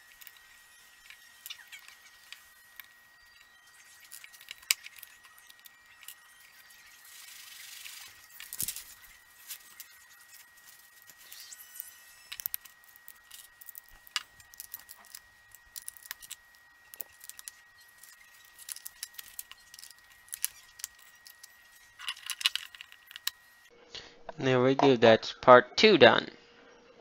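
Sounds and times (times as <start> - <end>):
plastic bricks clicking and rattling: 12.3 - 23.4.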